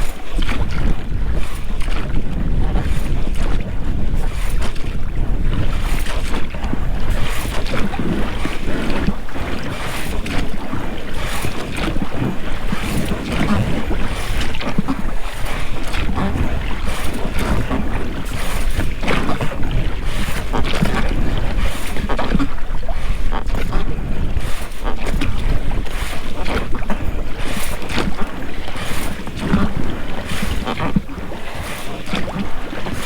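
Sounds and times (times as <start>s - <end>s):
oars creaking in rubber rowlocks: 0.0s - 3.6s, 4.2s - 33.0s
oars splashing in water: 0.0s - 33.0s
wind rumble on microphone: 0.0s - 33.0s.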